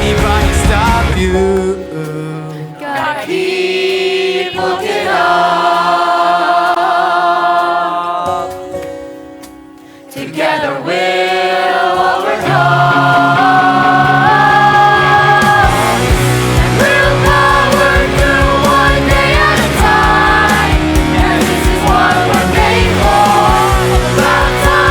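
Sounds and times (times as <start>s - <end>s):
sustained pop-rock chords: 0.0s - 3.1s, 12.2s - 24.9s
group singing held notes: 2.4s - 8.8s, 10.1s - 24.9s.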